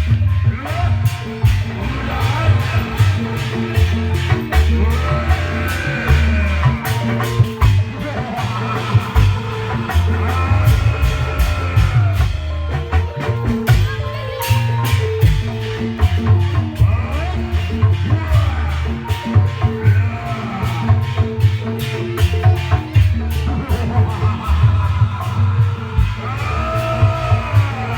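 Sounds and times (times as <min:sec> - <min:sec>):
loud music with drums and bass: 0:00.0 - 0:27.9.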